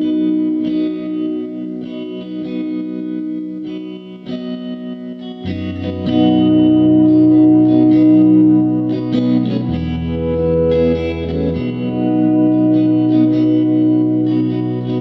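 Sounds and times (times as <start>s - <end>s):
guitar sustained chords: 0.0s - 15.0s
bass: 5.4s - 15.0s.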